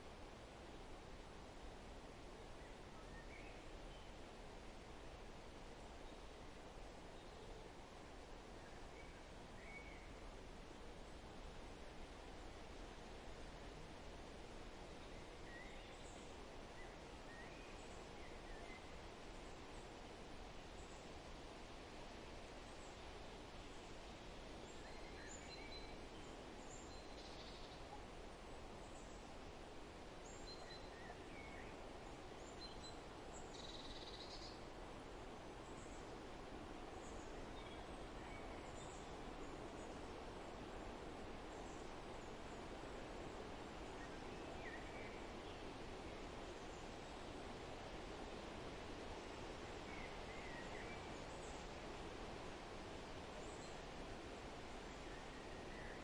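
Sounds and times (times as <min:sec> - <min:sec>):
forest ambience hiss: 0:00.0 - 0:56.0
faint bird chirps: 0:02.6 - 0:04.2, 0:14.8 - 0:19.6, 0:24.6 - 0:28.1, 0:30.2 - 0:34.7.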